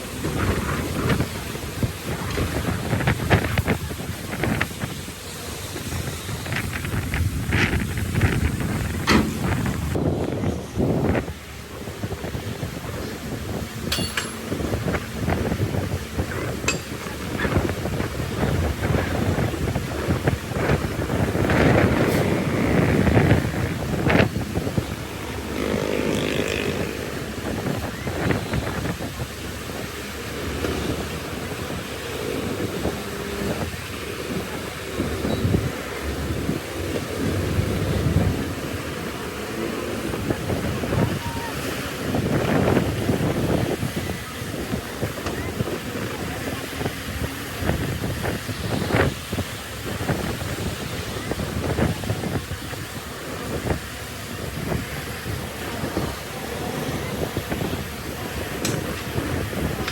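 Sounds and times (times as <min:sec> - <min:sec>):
bulldozer diesel engine running: 0:00.0 - 0:59.9
wind buffeting microphone: 0:00.0 - 0:59.9
knocks and rattles: 0:13.8 - 0:15.0.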